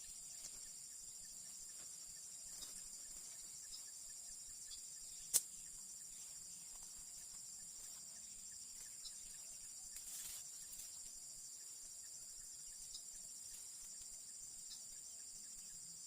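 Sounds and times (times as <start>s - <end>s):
crickets trilling: 0.0s - 16.0s
sharp click: 5.3s - 5.6s.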